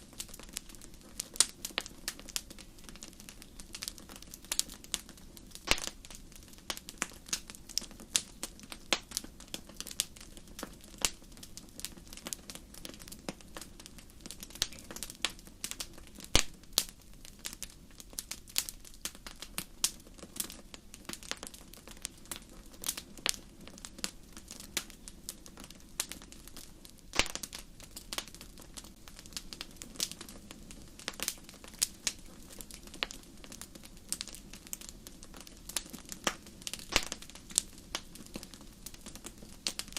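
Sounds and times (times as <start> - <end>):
campfire crackling and snapping: 0.0 - 39.9
low steady rush of fire: 0.0 - 39.9.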